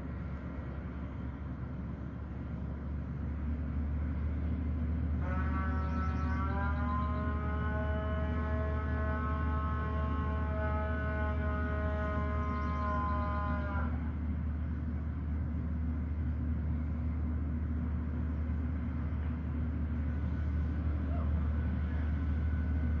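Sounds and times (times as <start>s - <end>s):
held horn-like tone: 5.2s - 14.3s
steady low rumble: 11.7s - 23.0s.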